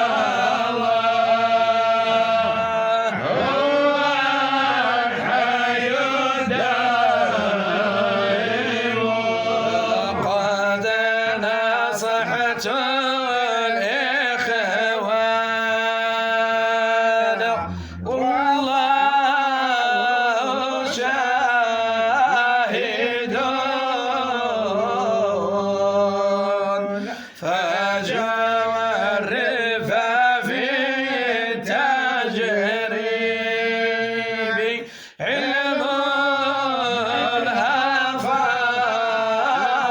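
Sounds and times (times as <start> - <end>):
man chanting melodic phrases: 13.6 - 19.1.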